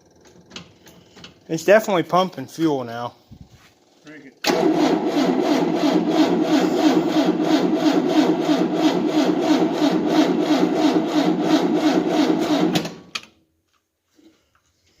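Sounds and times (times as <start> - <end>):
engine cranking without starting: 4.4 - 13.1.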